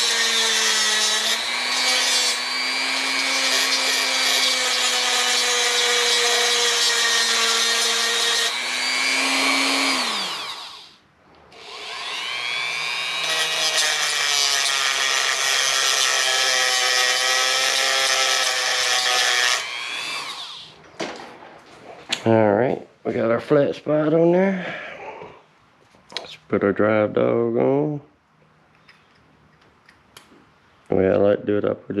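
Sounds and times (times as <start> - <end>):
electric grinder grinding steel: 0.0 - 11.0, 11.6 - 20.7.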